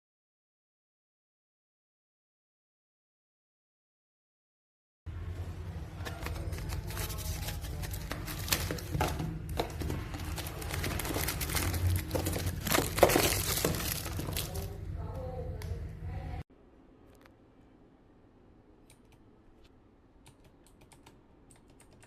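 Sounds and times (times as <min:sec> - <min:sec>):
steady low hum: 0:05.1 - 0:22.0
plastic items clicking and crinkling: 0:06.0 - 0:14.8.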